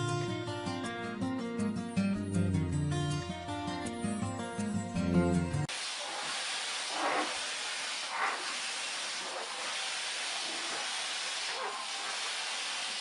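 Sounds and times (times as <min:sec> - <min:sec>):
vacuum cleaner running: 0:05.7 - 0:13.0.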